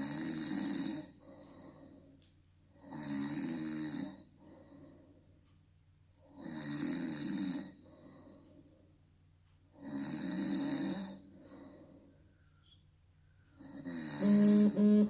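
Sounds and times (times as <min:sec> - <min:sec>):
quiet breaths: 0:00.0 - 0:14.0.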